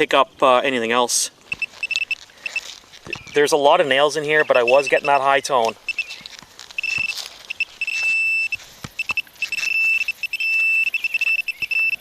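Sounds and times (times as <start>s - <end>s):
metal detector beeps: 1.5s - 3.4s, 4.2s - 6.2s, 6.8s - 12.0s.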